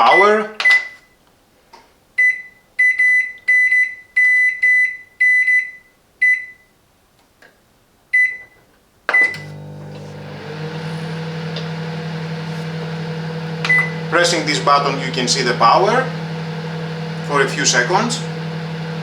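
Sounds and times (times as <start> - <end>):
microwave oven humming: 9.2 - 19.0
microwave short high beeps: 13.7 - 14.1.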